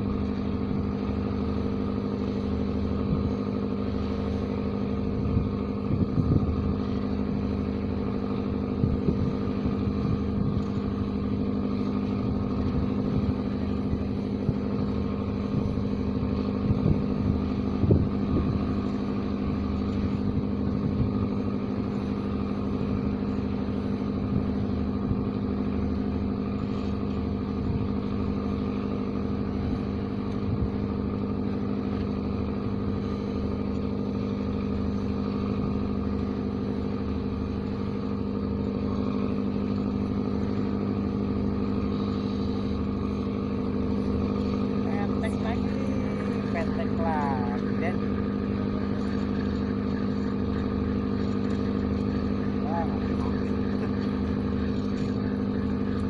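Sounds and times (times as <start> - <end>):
engine humming steadily: 0.0 - 56.0.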